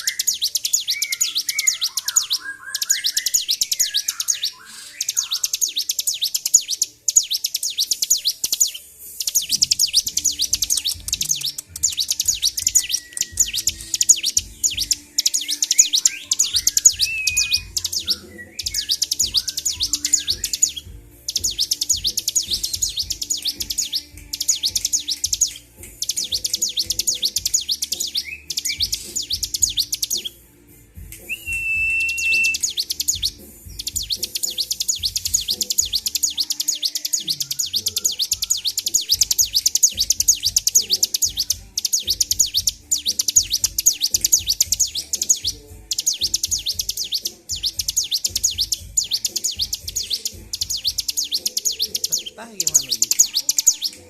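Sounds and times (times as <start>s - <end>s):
bird rapid high chattering song: 0.0s - 30.4s, 31.1s - 54.0s
clear bird whistle: 0.0s - 30.4s, 31.2s - 54.0s.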